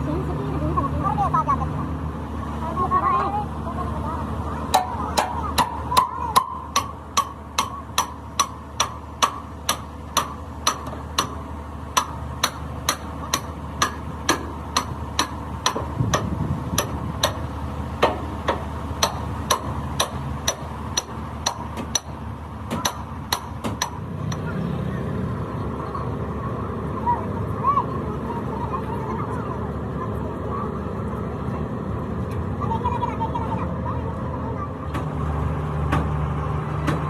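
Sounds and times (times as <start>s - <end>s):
hammer striking metal: 4.7s - 17.4s, 18.0s - 24.5s.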